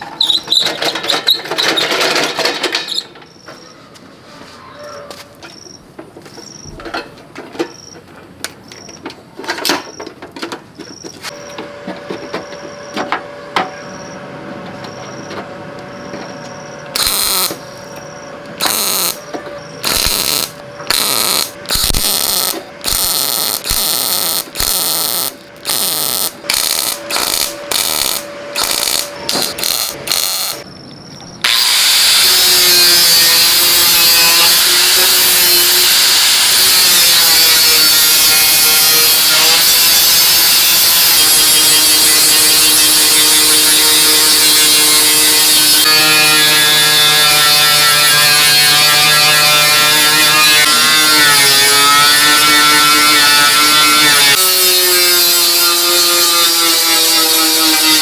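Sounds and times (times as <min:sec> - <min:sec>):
insects chirping: 0:05.4 - 0:06.8, 0:08.6 - 0:10.2, 0:10.8 - 0:11.5, 0:12.2 - 0:31.6
power tool running: 0:11.3 - 0:30.6, 0:31.4 - 0:58.0.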